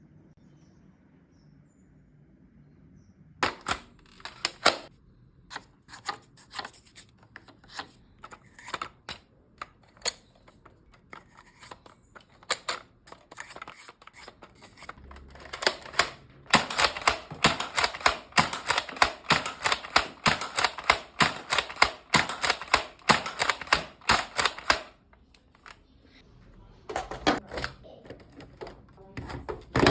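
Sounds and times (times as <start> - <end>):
toy blaster plastic clicks: 8.3 - 25.0.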